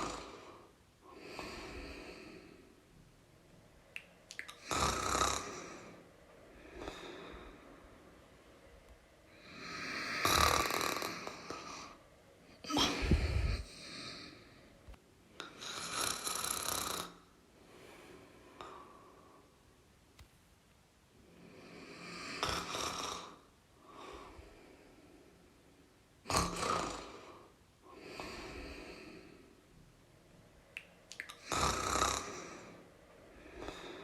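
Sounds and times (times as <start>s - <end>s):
person snoring: 0.0s - 2.5s, 4.6s - 6.0s, 9.4s - 12.0s, 15.6s - 17.3s, 21.6s - 23.5s, 26.3s - 29.3s, 31.4s - 32.8s.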